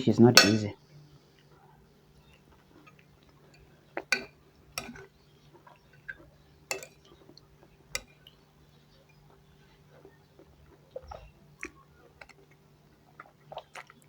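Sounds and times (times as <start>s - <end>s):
faint steady hum: 0.0s - 14.0s
cutlery clinking against a plate: 0.4s - 0.7s, 3.5s - 5.1s, 5.9s - 8.3s.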